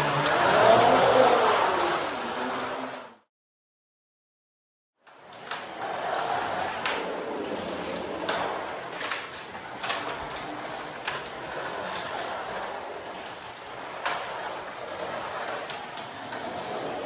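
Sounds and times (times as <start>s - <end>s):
slot car motor whirring: 0.0s - 3.1s.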